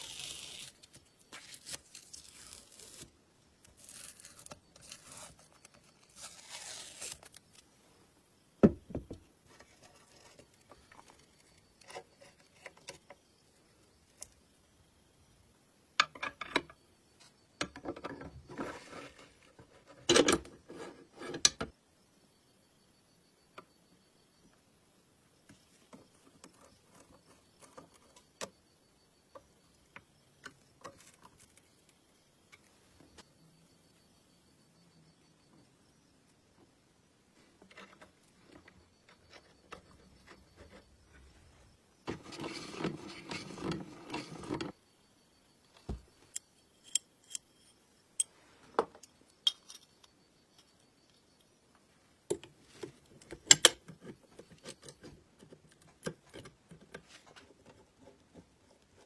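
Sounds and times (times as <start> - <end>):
tools scraping and rustling: 18.1 - 21.4, 37.6 - 44.8.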